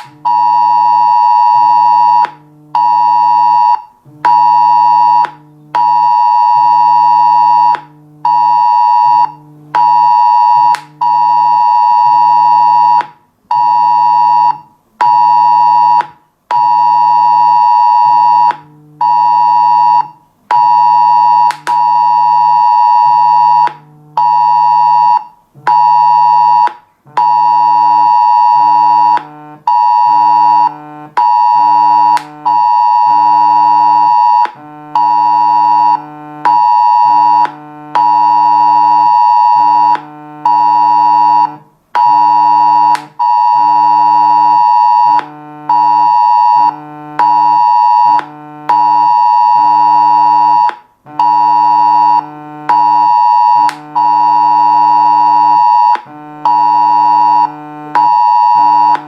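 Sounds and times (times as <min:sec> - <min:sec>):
low pulsing buzz tone: 0:02.4 - 0:03.1, 0:04.1 - 0:06.2, 0:06.9 - 0:11.2, 0:18.2 - 0:19.8, 0:21.9 - 0:24.8, 0:27.1 - 0:34.0, 0:34.6 - 0:41.7, 0:45.2 - 0:47.7, 0:51.1 - 0:53.2, 0:56.1 - 0:58.8.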